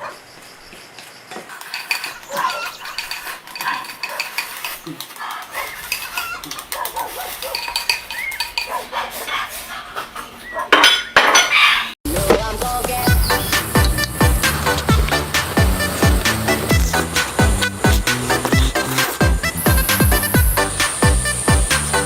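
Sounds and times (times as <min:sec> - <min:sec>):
chickens clucking: 0:00.8 - 0:12.0, 0:13.0 - 0:22.0
dishes and utensils clinking: 0:01.3 - 0:09.5, 0:10.7 - 0:11.6
loud dish clatter: 0:10.7 - 0:11.6.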